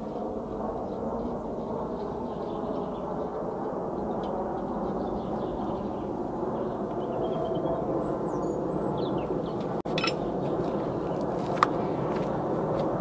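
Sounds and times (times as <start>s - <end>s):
military aircraft roaring overhead: 0.0s - 13.0s.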